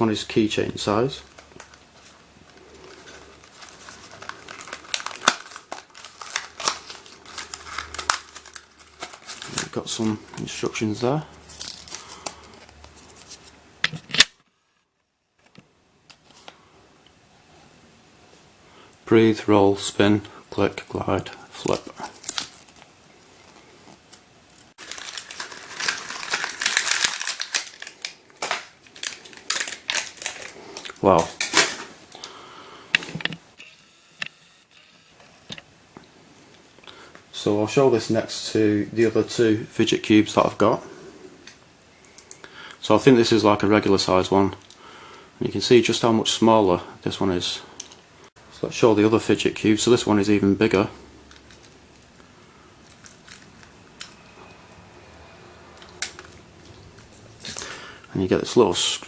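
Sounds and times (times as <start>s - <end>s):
plastic packaging crinkling: 1.2s - 13.6s, 21.2s - 32.4s, 50.7s - 54.5s.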